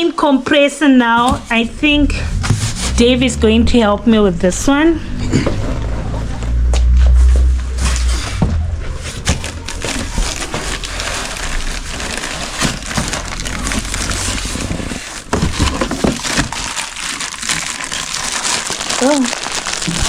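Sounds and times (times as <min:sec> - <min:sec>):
knocks and scrapes: 0:01.0 - 0:16.7
cardboard rustling: 0:07.7 - 0:20.0
plastic wrap crinkling: 0:08.9 - 0:20.0.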